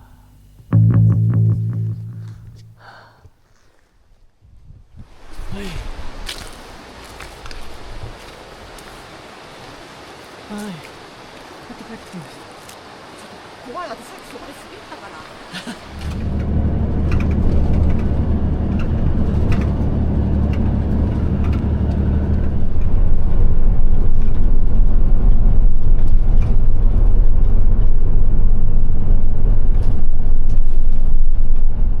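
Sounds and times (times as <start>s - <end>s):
engine and road rumble: 0.0s - 2.8s, 15.8s - 32.0s.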